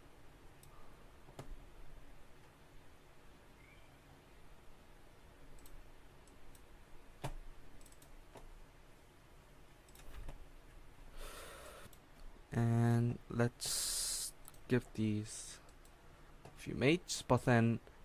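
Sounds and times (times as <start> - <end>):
soft hiss: 0.0 - 18.0
computer mouse clicks: 5.6 - 8.5, 9.8 - 10.4.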